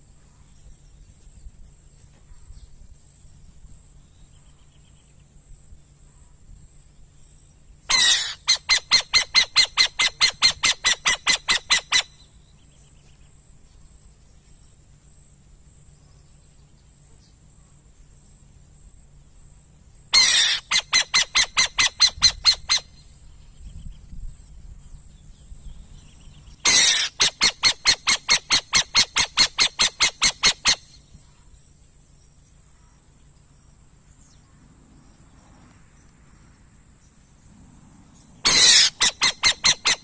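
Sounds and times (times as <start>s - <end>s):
bird screeching and squawking: 7.9s - 12.1s, 20.2s - 22.9s, 26.6s - 30.9s, 38.4s - 40.0s.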